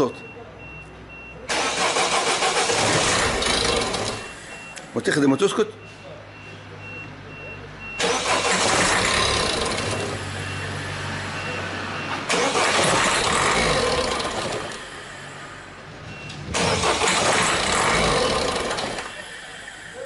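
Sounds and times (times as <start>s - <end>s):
car engine running: 2.0s - 4.4s, 8.0s - 11.3s, 12.2s - 20.0s.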